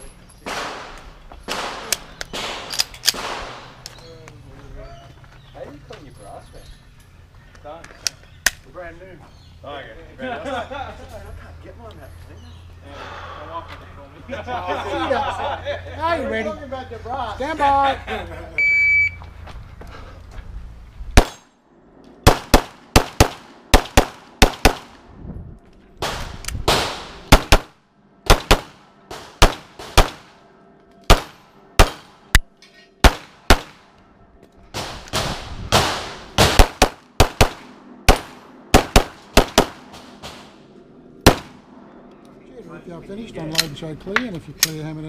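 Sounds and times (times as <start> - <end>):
shot timer beep: 18.6 - 19.2
pistol shots in rapid strings: 26.0 - 30.3, 31.1 - 32.1, 34.8 - 40.4.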